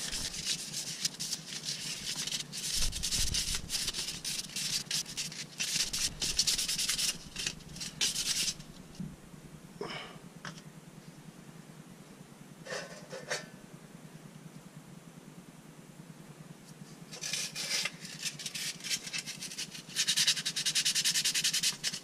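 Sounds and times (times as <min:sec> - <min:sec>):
hand sanding strokes: 0:00.0 - 0:08.7, 0:17.2 - 0:22.0.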